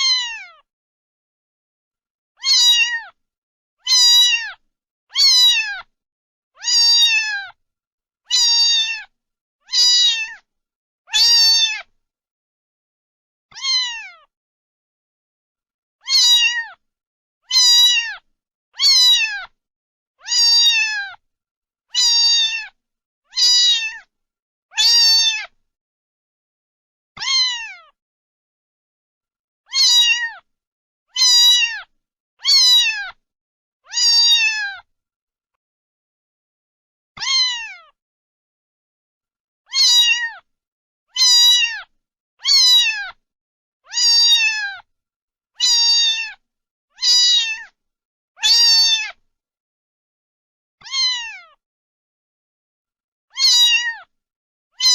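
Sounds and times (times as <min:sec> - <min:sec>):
cat meowing: 0:00.0 - 0:00.7, 0:02.4 - 0:03.2, 0:03.8 - 0:05.9, 0:06.6 - 0:07.6, 0:08.3 - 0:10.5, 0:11.1 - 0:11.9, 0:13.5 - 0:14.3, 0:16.0 - 0:16.8, 0:17.4 - 0:19.6, 0:20.2 - 0:21.2, 0:21.9 - 0:24.1, 0:24.7 - 0:25.6, 0:27.2 - 0:28.0, 0:29.7 - 0:30.5, 0:31.1 - 0:33.2, 0:33.9 - 0:34.9, 0:37.2 - 0:38.0, 0:39.7 - 0:40.5, 0:41.1 - 0:43.2, 0:43.9 - 0:44.9, 0:45.6 - 0:46.4, 0:47.0 - 0:47.8, 0:48.4 - 0:49.2, 0:50.8 - 0:51.6, 0:53.3 - 0:54.1.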